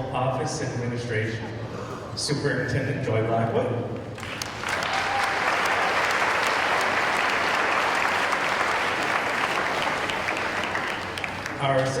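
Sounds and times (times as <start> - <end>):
audience applause: 4.2 - 11.8.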